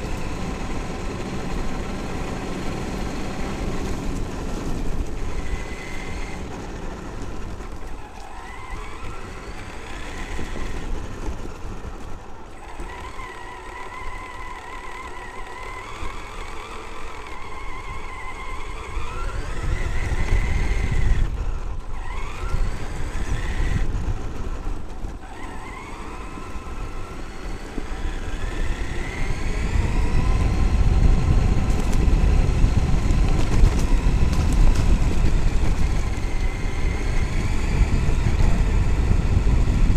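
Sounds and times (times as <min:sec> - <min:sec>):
electric motor whine: 0:00.0 - 0:39.9
rumble of wind and tyres: 0:00.0 - 0:39.9.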